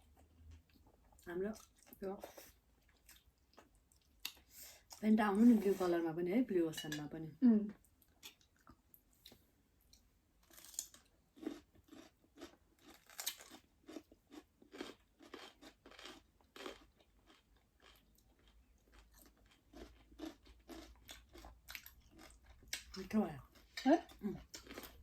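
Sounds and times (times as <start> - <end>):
chewing with crisp crunches: 0.0 - 5.0, 7.8 - 25.0.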